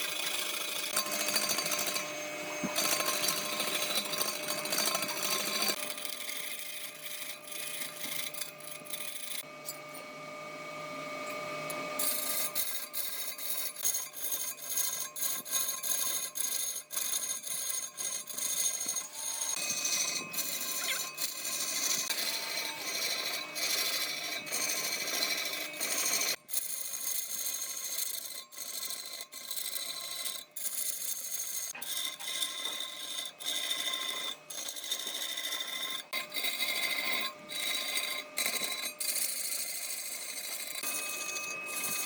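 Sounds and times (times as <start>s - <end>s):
power tools working wood: 0.0s - 26.5s, 31.6s - 42.0s
wood scraping and sawing: 0.0s - 42.0s
machine whine: 0.1s - 13.3s, 18.9s - 26.4s, 40.3s - 42.0s.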